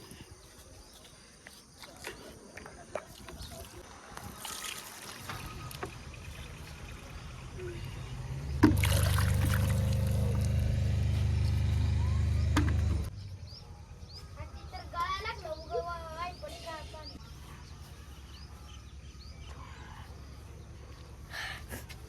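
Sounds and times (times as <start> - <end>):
diesel engine droning: 5.6 - 13.7.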